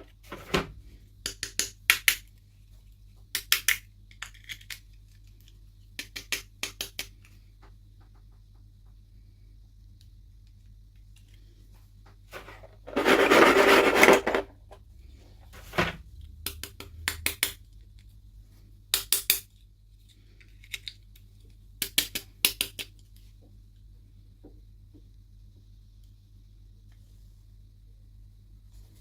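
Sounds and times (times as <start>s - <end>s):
plastic pieces clicking and clattering: 3.4s - 7.1s, 12.3s - 14.5s, 20.4s - 22.9s.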